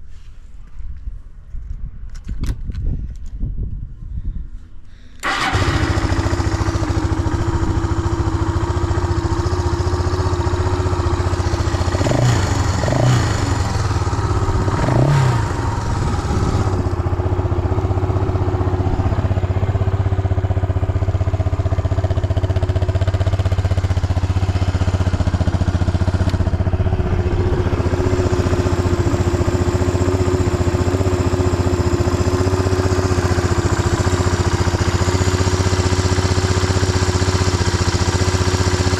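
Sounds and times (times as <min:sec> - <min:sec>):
engine revving: 0:05.2 - 0:17.1, 0:24.8 - 0:38.9
motorcycle engine starting and idling: 0:05.2 - 0:38.9.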